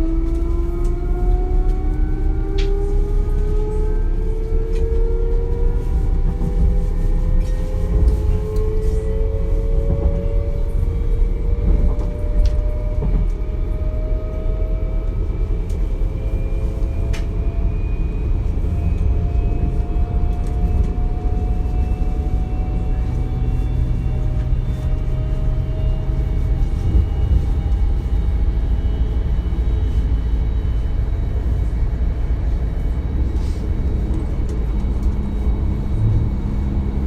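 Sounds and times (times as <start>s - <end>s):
wheels rumbling on rail: 0.0s - 37.0s.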